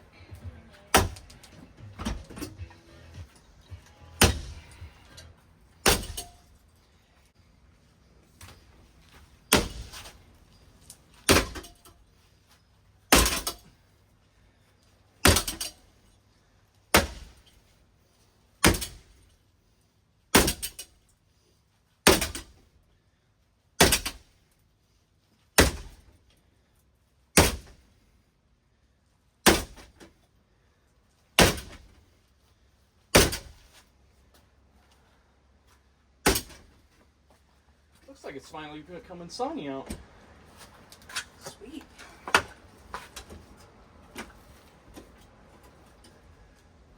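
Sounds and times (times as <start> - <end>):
ceiling fan being struck: 0.3 - 5.1.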